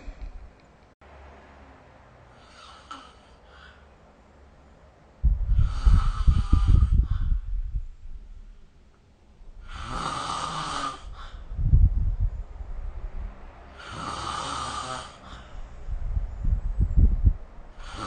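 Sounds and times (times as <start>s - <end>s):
person snoring: 5.5s - 7.1s, 9.6s - 11.4s, 13.8s - 15.5s, 17.8s - 18.0s.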